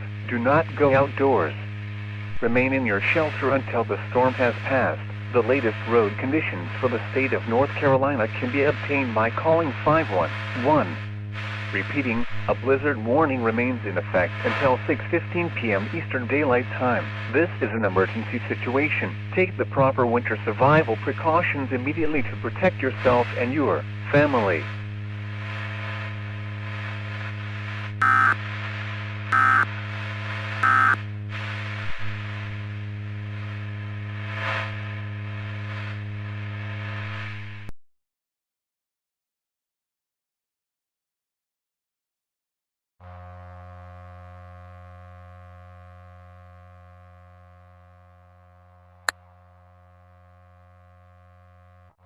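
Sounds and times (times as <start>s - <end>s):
low electronic buzzing drone: 0.0s - 37.7s, 43.0s - 52.0s
low hum: 0.0s - 37.7s
digital data tone bursts: 28.0s - 28.4s, 29.3s - 29.7s, 30.6s - 31.0s.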